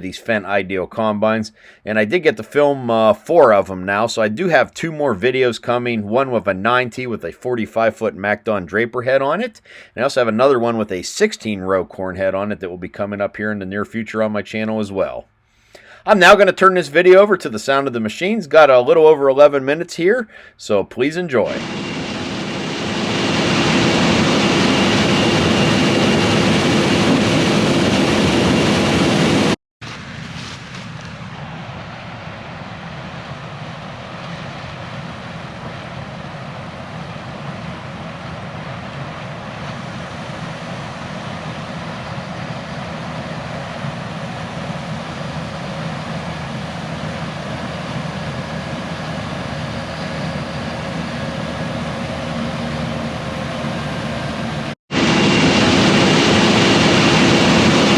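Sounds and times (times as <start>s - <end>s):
combine harvester running: 21.5s - 29.6s, 30.3s - 57.9s.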